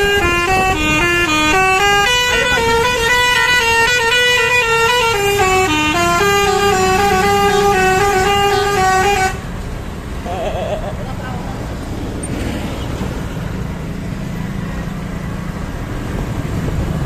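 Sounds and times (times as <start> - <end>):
bus musical horn melody: 0.0 - 9.6.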